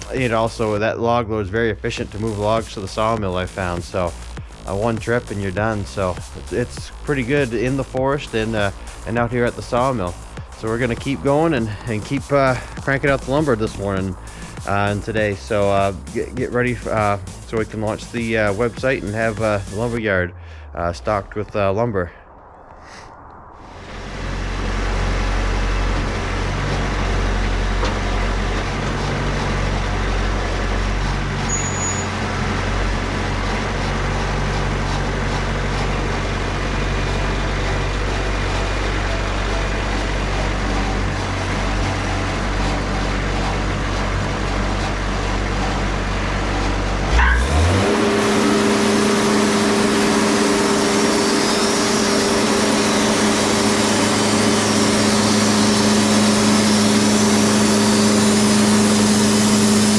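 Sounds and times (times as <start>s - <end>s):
diesel engine running: 0.0s - 1.0s, 1.6s - 21.4s, 23.6s - 59.9s.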